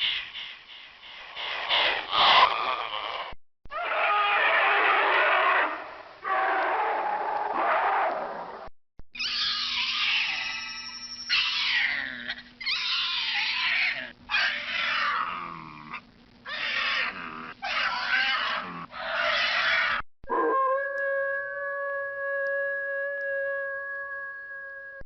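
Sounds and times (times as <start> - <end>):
creature roaring: 2.1 - 8.4, 14.0 - 20.6.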